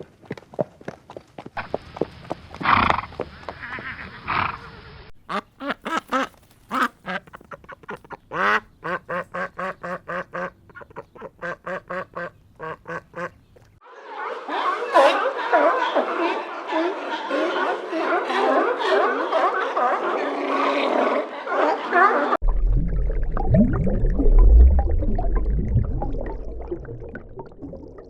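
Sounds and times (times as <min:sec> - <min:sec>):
ducks quacking: 0:03.4 - 0:13.4, 0:14.0 - 0:22.4.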